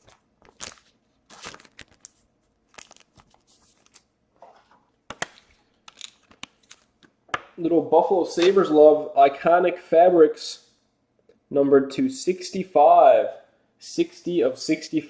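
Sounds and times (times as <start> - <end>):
cards and plastic packaging rustling: 0.0 - 7.1.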